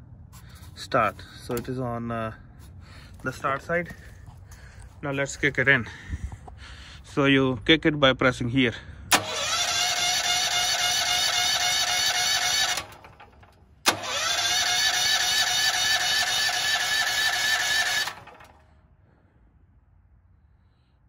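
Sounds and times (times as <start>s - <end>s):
generator starter cranking: 9.1s - 18.7s.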